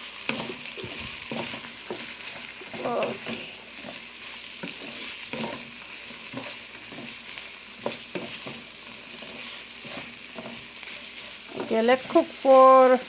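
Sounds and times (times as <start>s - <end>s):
spatula scraping a pan: 0.0s - 13.0s
vegetables sizzling in a pan: 0.0s - 13.0s.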